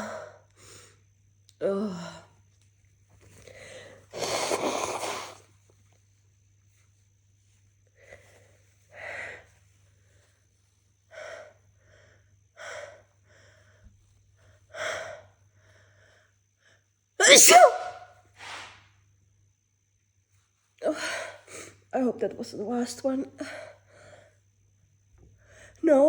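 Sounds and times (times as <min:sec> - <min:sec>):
person sneezing: 0:04.2 - 0:05.4, 0:17.2 - 0:18.7.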